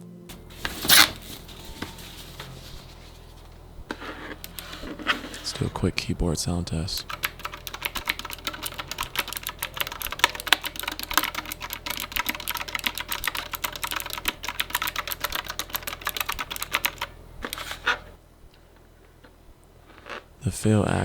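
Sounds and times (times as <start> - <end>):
fast typing on mechanical keyboard: 7.0 - 17.7.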